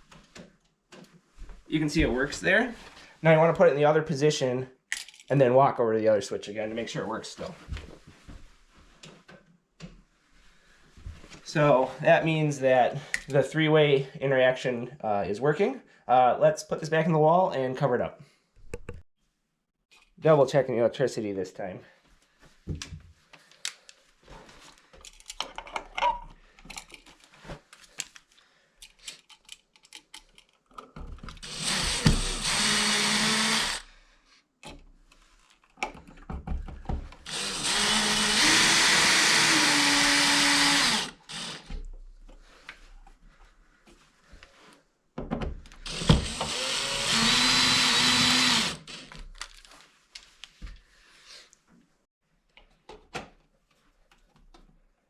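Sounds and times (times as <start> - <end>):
power drill driving screws: 31.4 - 33.9, 37.2 - 41.8, 45.8 - 49.2.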